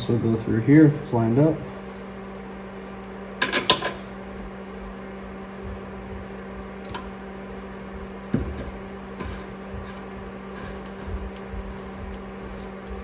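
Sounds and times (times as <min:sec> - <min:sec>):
steady low hum: 0:00.0 - 0:13.0
dull knock: 0:08.3 - 0:13.0.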